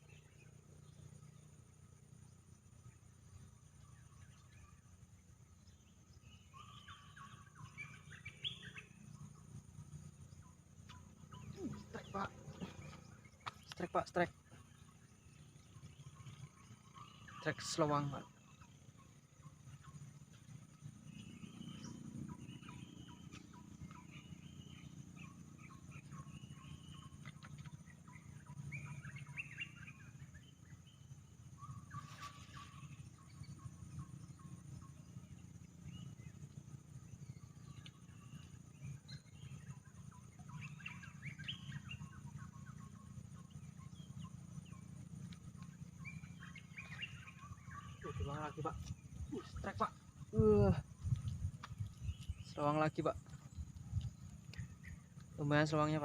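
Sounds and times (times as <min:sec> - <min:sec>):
bird chirping: 0:00.0 - 0:56.0
low rumble: 0:42.0 - 0:55.4.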